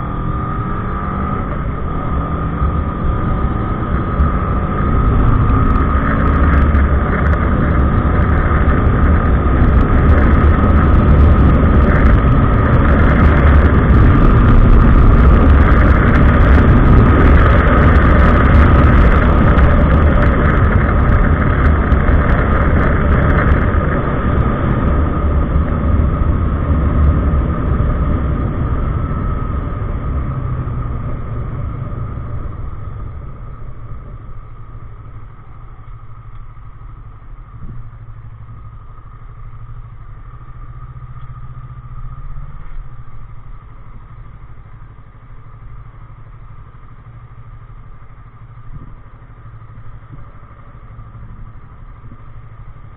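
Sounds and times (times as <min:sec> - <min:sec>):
motorcycle engine idling: 0:28.4 - 0:52.9.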